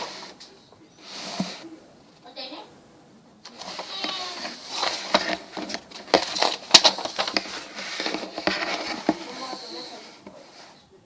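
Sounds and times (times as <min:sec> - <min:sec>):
packaging rustling: 0:03.5 - 0:10.4
plastic parts clicking: 0:04.8 - 0:09.2.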